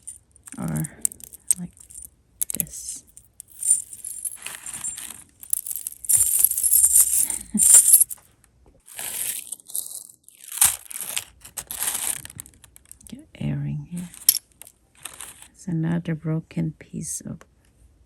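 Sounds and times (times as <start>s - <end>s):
metal jewelry clinking: 0.0s - 8.2s, 8.9s - 13.0s, 14.0s - 15.5s.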